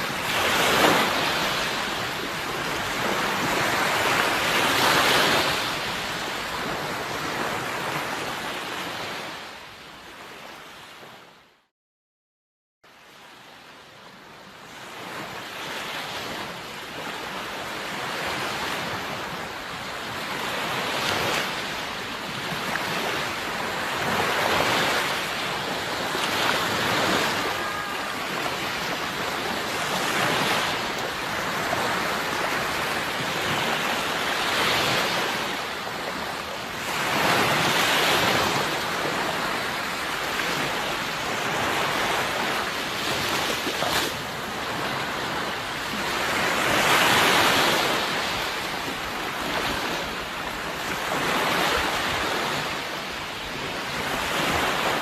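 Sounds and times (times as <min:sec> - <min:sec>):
sea surf waves breaking: 0:00.0 - 0:09.6, 0:14.9 - 0:55.0.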